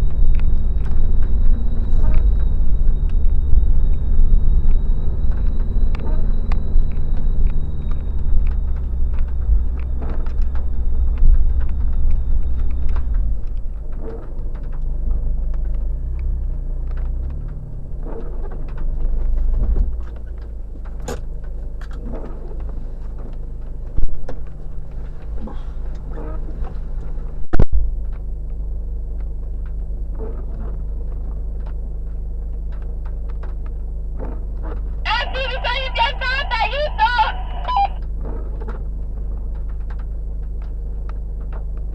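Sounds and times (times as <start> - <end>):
vehicle rattling: 0.0 - 28.5
car engine running at low revs: 0.0 - 41.9.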